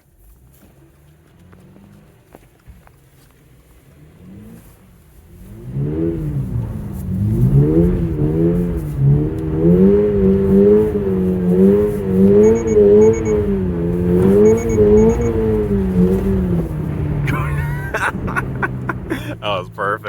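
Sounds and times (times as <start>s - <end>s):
car engine revving: 3.7s - 20.0s
short high beep: 12.4s - 13.4s, 14.4s - 15.4s.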